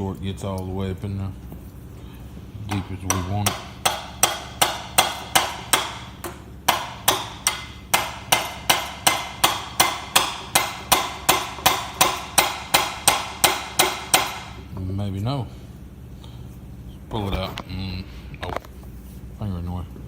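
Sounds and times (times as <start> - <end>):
hammer tapping metal shaft: 2.6 - 14.7.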